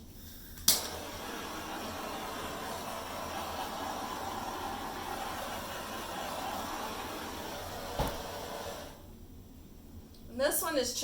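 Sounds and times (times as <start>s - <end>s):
hairdryer blowing air: 0.8s - 9.0s.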